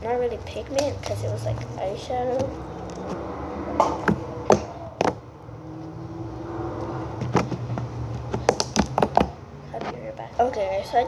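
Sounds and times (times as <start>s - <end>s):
plastic containers clicking and tapping: 7.2s - 9.4s.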